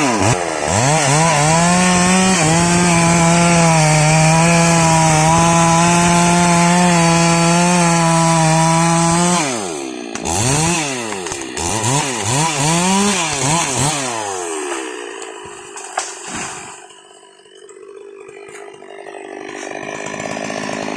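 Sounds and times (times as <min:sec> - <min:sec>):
chainsaw revving: 0:00.0 - 0:20.9.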